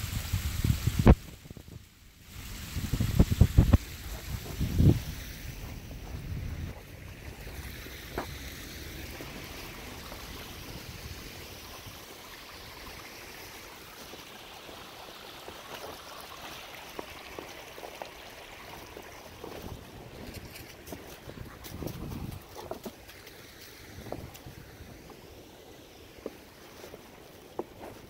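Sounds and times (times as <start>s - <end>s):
strong wind rushing: 2.5s - 6.8s.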